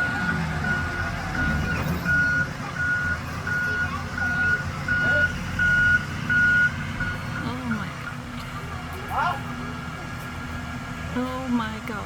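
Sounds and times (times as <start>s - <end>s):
reversing alarm beeping: 0.0s - 8.2s
low engine rumble: 0.0s - 12.0s.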